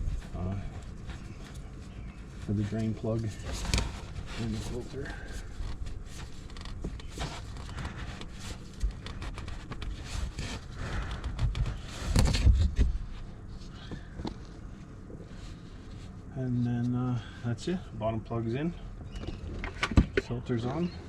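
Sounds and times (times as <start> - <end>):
deep rustle of handling: 0.0 - 16.9
clicks and scrapes of parts: 0.8 - 12.9.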